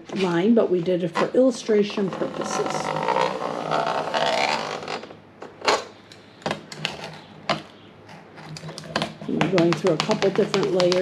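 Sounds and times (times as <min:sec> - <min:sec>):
blade scraping cut: 0:01.0 - 0:05.1.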